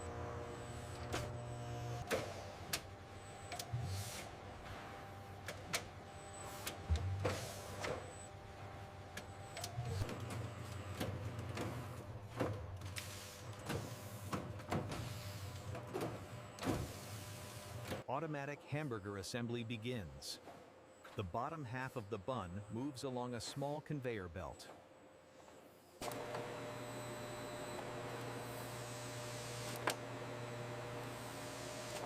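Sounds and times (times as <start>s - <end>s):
machinery motor hum: 0.0s - 18.1s, 26.0s - 32.0s.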